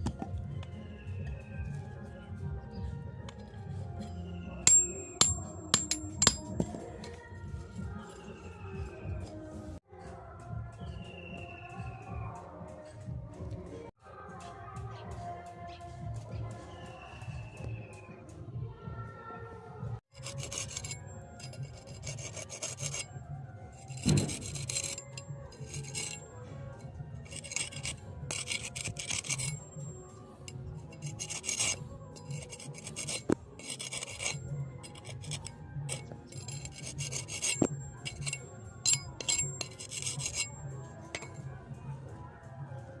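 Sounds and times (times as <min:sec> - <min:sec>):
hand file rasping on steel: 0:04.6 - 0:07.2, 0:20.1 - 0:41.4.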